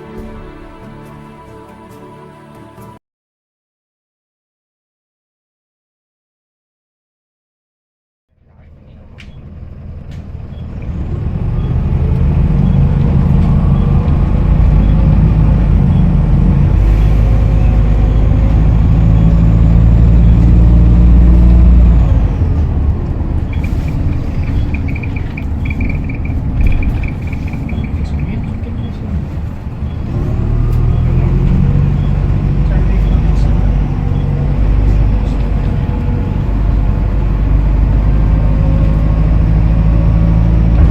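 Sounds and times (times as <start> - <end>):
bus engine running: 0.0 - 2.9, 8.5 - 40.9
turbocharger whistling: 8.9 - 40.9.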